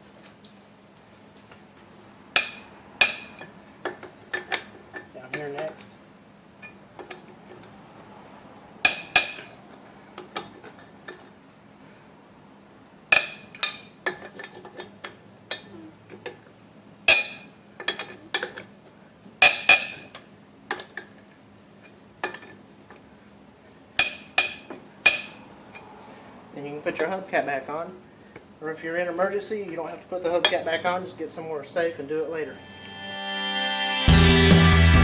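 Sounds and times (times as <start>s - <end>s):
wrench clanking on lug nuts: 2.3s - 5.9s, 8.8s - 11.3s, 13.1s - 16.4s, 19.4s - 21.2s, 24.0s - 25.9s.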